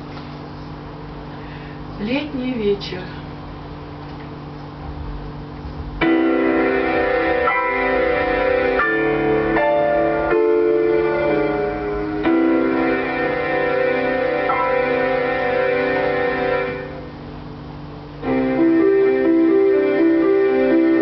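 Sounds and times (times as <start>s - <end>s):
keyboard playing slow chords: 5.7s - 17.4s, 18.1s - 21.0s.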